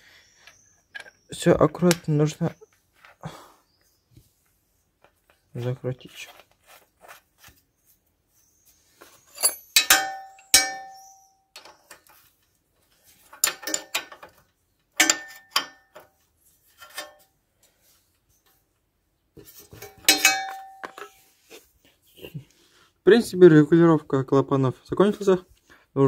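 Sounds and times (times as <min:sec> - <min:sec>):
metal hand tools clinking: 0:09.3 - 0:11.8, 0:13.3 - 0:14.3, 0:15.0 - 0:16.1, 0:16.8 - 0:17.2, 0:19.8 - 0:21.2.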